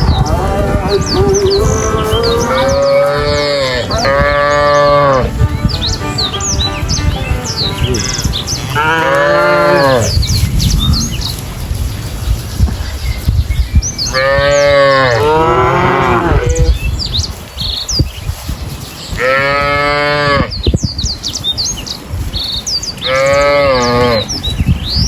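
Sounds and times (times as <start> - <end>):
small birds chirping: 0.0 - 25.0
cow mooing: 0.3 - 5.4, 7.9 - 10.2, 14.2 - 16.6, 19.2 - 20.5.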